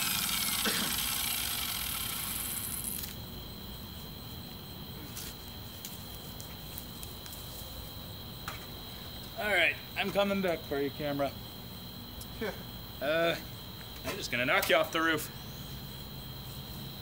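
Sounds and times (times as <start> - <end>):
steady hiss: 0.0 - 7.9
crickets chirping: 0.0 - 17.0.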